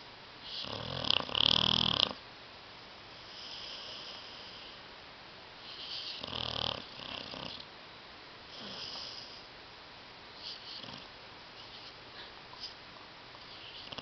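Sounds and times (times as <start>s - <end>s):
dog snoring: 0.4s - 2.2s, 3.2s - 4.8s, 5.6s - 7.6s, 8.5s - 9.5s, 10.4s - 11.1s, 13.5s - 14.0s.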